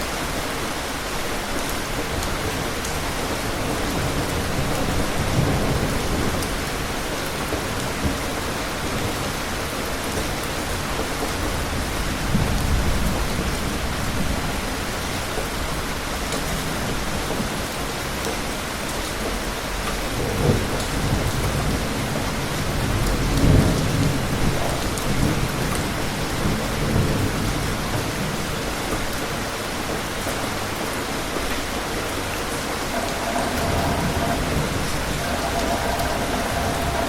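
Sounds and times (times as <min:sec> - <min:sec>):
steady rain: 0:00.0 - 0:37.0
distant thunder rumbling: 0:32.0 - 0:37.0.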